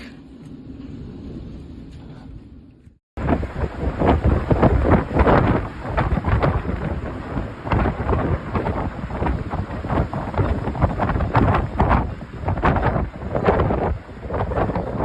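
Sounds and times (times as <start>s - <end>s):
rain: 3.2s - 15.0s
wind buffeting microphone: 3.2s - 15.0s.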